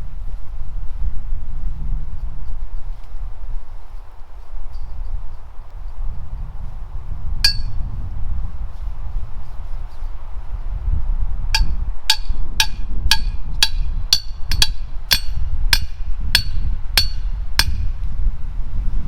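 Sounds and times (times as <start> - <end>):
hammer striking metal post: 7.5 - 7.8, 11.6 - 18.0.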